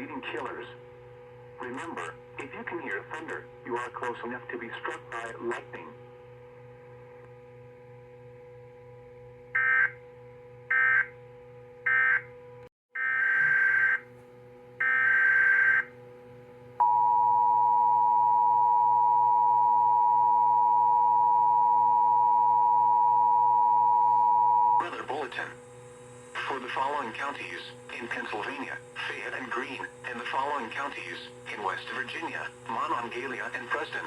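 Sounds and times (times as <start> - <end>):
faint steady hum: 0.0 - 34.0
buzzy data tones: 9.5 - 10.0, 10.7 - 11.2, 13.0 - 34.0
two-tone attention signal: 13.0 - 14.0, 16.8 - 24.9.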